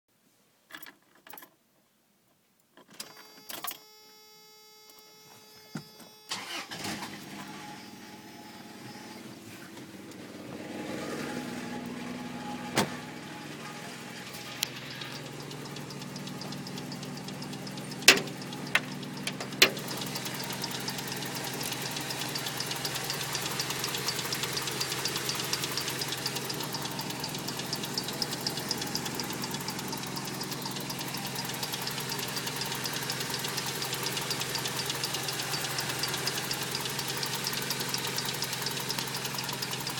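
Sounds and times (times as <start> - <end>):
car engine idling: 6.3 - 39.9
steady pitched tone: 11.4 - 37.8
fast even engine ticking: 11.5 - 39.9
sharp clicks: 14.5 - 39.9.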